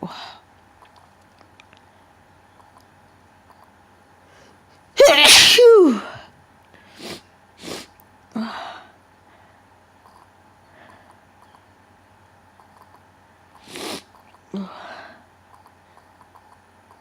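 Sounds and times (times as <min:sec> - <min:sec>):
person sneezing: 0:05.0 - 0:06.2
faint breathy sounds: 0:13.6 - 0:16.2.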